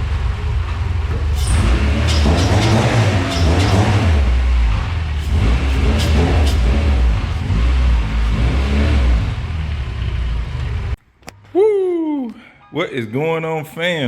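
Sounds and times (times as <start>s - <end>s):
car engine revving hard: 0.0s - 11.0s
sharp exhaust pops: 0.6s - 8.6s.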